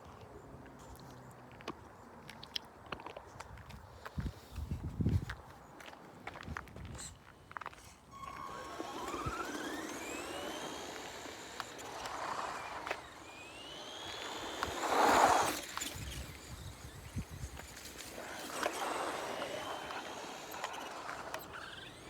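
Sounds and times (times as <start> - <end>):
electric motor whining: 8.1 - 22.0.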